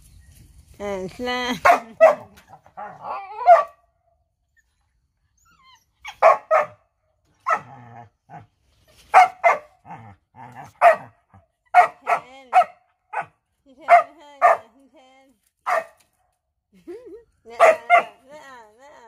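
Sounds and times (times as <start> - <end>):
dog barking: 1.6 - 3.8, 6.1 - 6.8, 7.4 - 7.7, 9.1 - 9.8, 10.7 - 14.6, 15.6 - 16.0, 17.6 - 18.2.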